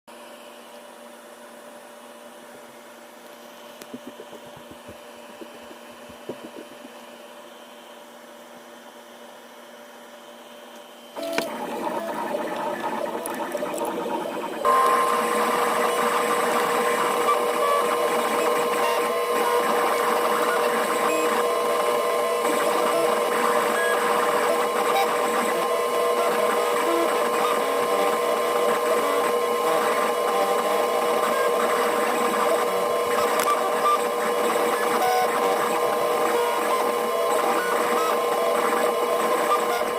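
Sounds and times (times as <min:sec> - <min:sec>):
laser engraver hum: 0:03.6 - 0:07.9, 0:10.4 - 0:39.9
gantry motor whine and chatter: 0:11.1 - 0:39.9.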